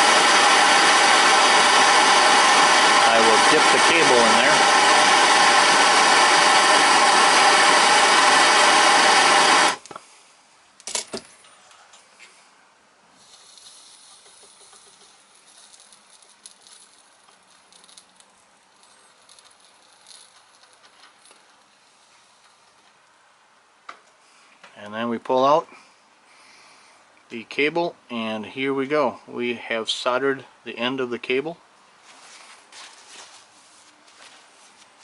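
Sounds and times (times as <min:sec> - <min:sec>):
gas torch flame rushing: 0:00.0 - 0:10.0
faint high hiss: 0:09.8 - 0:32.7.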